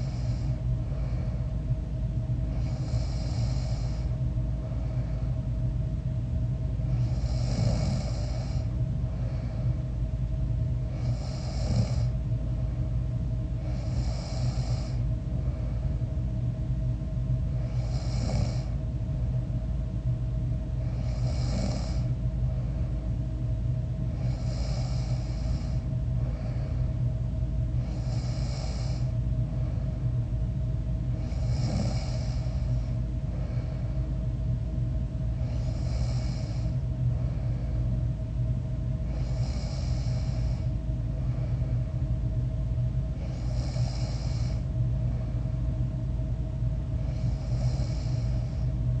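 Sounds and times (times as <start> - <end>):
person snoring: 0.0 - 1.2, 2.5 - 4.2, 6.9 - 8.7, 10.9 - 12.1, 13.6 - 15.0, 17.6 - 18.8, 20.8 - 22.1, 24.2 - 26.8, 27.8 - 29.1, 31.2 - 33.8, 35.4 - 36.8, 39.1 - 40.7, 43.2 - 44.7, 47.0 - 48.6
low background hum: 0.0 - 49.0.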